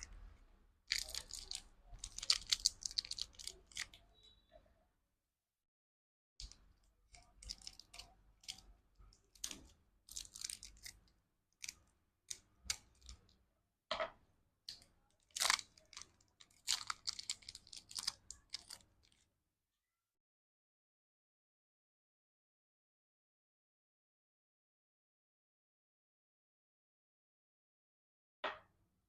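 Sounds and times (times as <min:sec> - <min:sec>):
candy and wrappers crinkling: 0:00.9 - 0:04.0, 0:06.4 - 0:13.4, 0:14.7 - 0:19.2.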